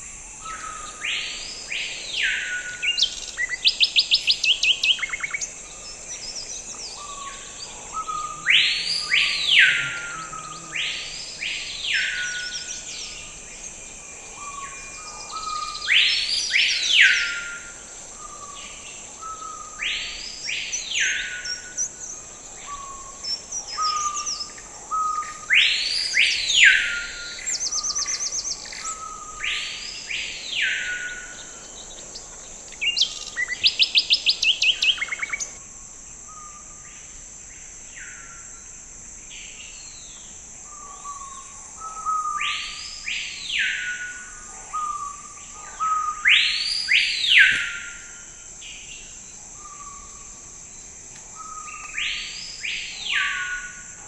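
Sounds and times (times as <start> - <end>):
high insect drone: 0.0 - 54.0.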